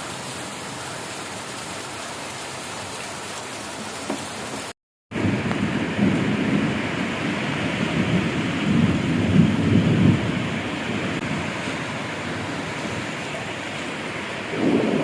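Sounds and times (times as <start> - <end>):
heavy rain: 0.0 - 15.0
thunder rumbling: 5.1 - 15.0.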